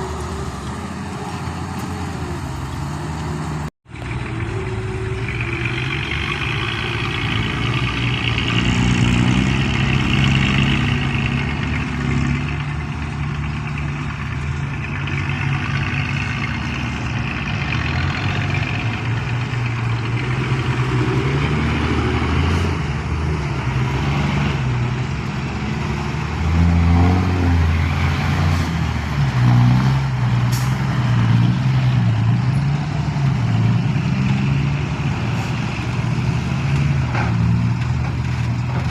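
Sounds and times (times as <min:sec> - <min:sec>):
excavator diesel engine: 0:00.0 - 0:38.9.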